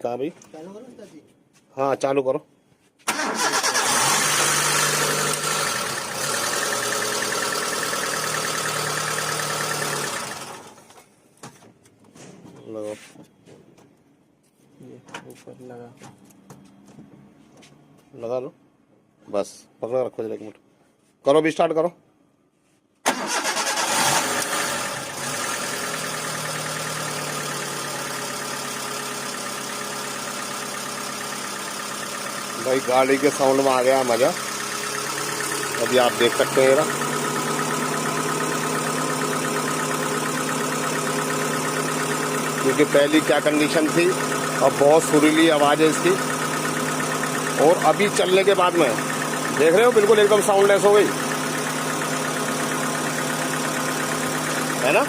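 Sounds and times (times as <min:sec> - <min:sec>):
car engine running: 0:03.5 - 0:10.9, 0:23.9 - 0:55.0.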